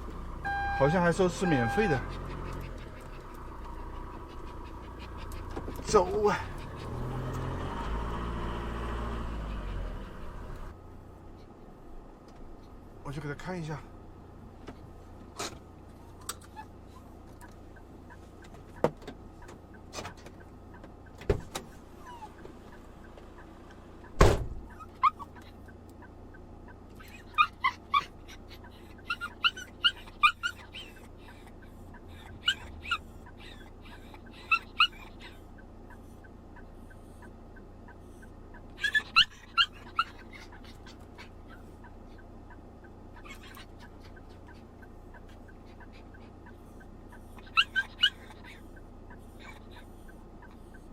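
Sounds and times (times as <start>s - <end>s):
dog yipping: 21.9s - 22.4s, 24.7s - 25.7s, 26.7s - 50.8s.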